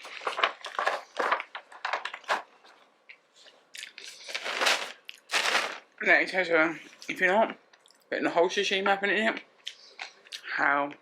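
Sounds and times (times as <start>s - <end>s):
close chewing and crunching: 3.1s - 4.3s.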